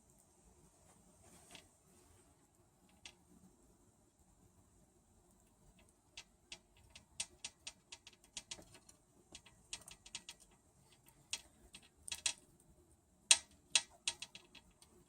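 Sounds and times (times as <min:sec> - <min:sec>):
bird claws clicking on strings: 0:06.2 - 0:12.4, 0:13.3 - 0:15.0.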